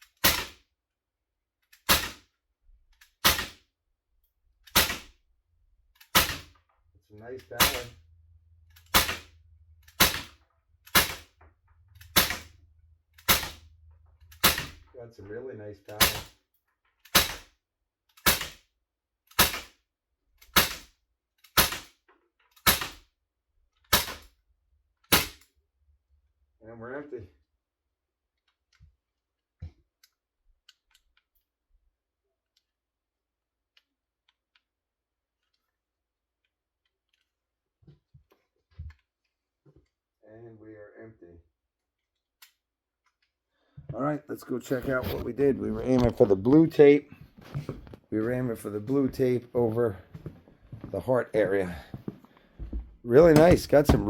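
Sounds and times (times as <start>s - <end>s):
air pistol shots: 0.2s - 0.6s, 1.8s - 2.3s, 3.2s - 3.6s, 4.7s - 5.2s, 6.0s - 6.6s, 7.5s - 8.0s, 8.8s - 11.4s, 12.0s - 12.6s, 13.2s - 13.7s, 14.3s - 14.9s, 15.9s - 16.3s, 17.1s - 17.5s, 18.2s - 18.6s, 19.3s - 19.8s, 20.5s - 20.9s, 21.6s - 21.9s, 22.6s - 23.0s, 23.9s - 24.3s, 25.1s - 25.4s, 53.3s - 54.0s.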